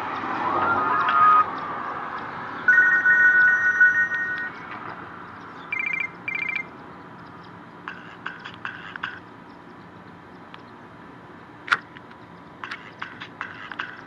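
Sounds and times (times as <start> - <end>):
warbling two-note ringtone trill: 2.7 - 4.6, 5.7 - 6.7.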